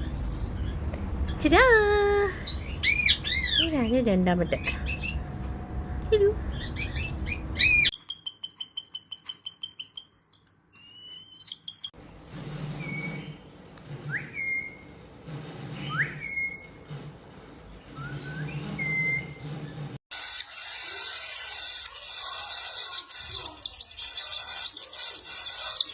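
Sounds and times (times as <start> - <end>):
parrot chirping: 0.0 - 11.9, 20.2 - 25.9
parrot whistling: 2.4 - 3.7, 4.6 - 5.4, 6.4 - 10.0, 18.0 - 19.4.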